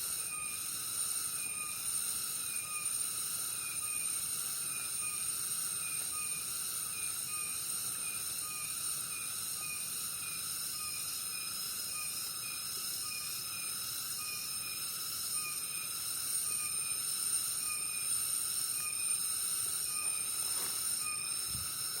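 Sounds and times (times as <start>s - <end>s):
insect trills: 0.0s - 22.0s
short insect chirp: 0.0s - 22.0s.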